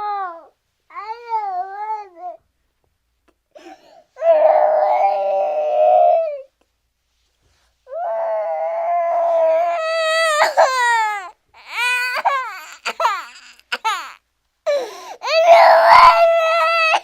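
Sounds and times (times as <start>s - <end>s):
cartoon baby crying: 15.2s - 17.0s.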